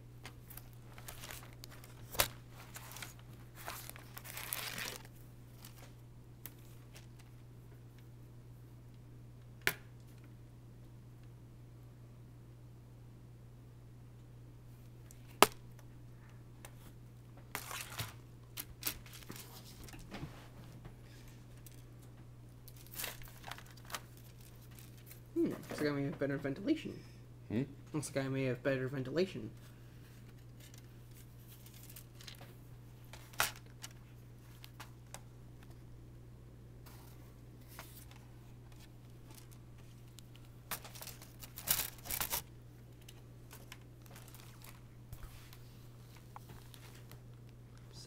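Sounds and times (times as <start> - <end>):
steady low hum: 0.0 - 48.0
rustling and scraping on plastic: 0.3 - 7.2, 43.1 - 47.2.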